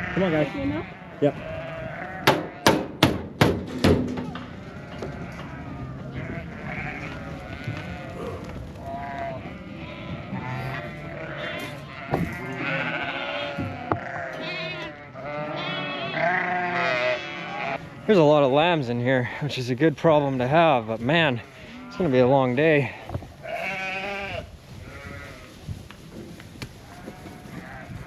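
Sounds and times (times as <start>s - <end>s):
sheep bleating: 0.0s - 2.8s, 4.2s - 18.1s, 21.1s - 25.6s, 26.8s - 28.0s
barn background noise: 0.0s - 28.0s
sharp knocks: 2.2s - 4.4s.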